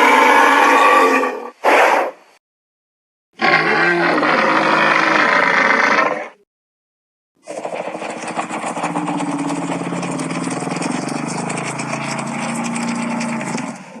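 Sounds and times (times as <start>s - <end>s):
low rattling creature growl: 3.4s - 6.4s, 8.1s - 14.0s.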